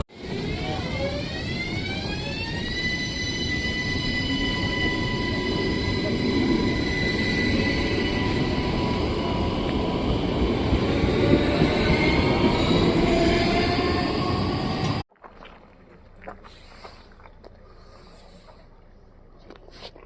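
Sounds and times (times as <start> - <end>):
train rumbling on rails: 0.0 - 15.1.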